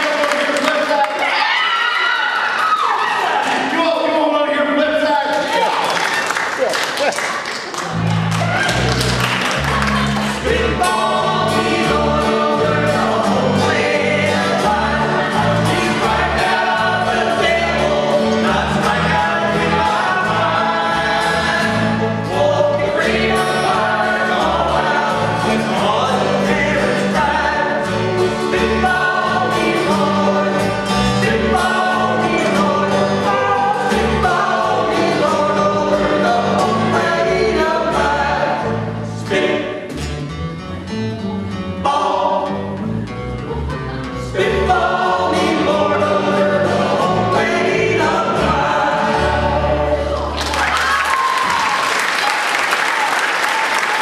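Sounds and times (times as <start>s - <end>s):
bass line: 7.9s - 51.7s
voices singing in close harmony: 10.2s - 39.9s, 41.8s - 42.8s, 44.2s - 50.6s.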